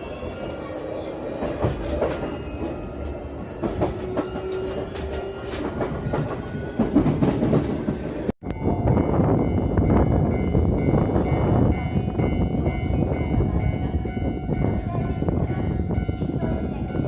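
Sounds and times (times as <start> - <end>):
steady train noise: 0.0 - 17.0
train hum: 0.0 - 17.0
train wheels clicking over rail joints: 3.6 - 8.3.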